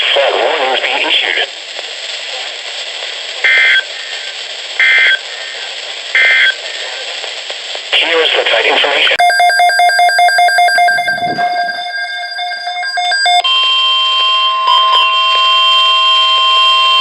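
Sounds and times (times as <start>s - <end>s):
rapid pulsing electronic beeping: 9.2s - 13.4s
steady alarm tone: 9.2s - 17.0s.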